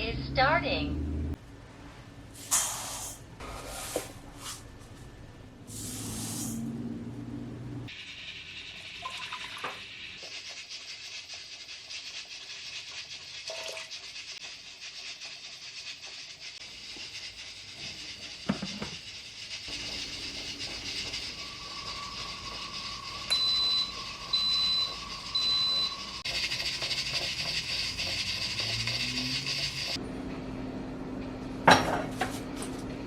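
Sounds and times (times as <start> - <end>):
steady kitchen hiss: 2.0 - 4.8, 5.6 - 6.8, 7.8 - 30.0.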